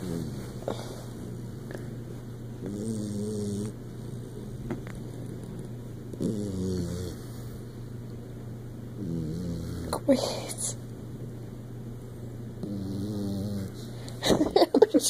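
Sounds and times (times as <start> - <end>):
dog snoring: 0.0 - 1.9, 2.6 - 4.6, 6.1 - 7.6, 9.0 - 10.1, 12.6 - 13.9
steady low hum: 0.0 - 15.0.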